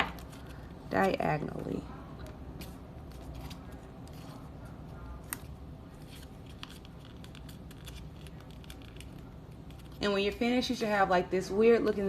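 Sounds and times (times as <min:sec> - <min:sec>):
low steady hum: 0:00.0 - 0:12.0
paper rustling and crackling: 0:02.6 - 0:10.0.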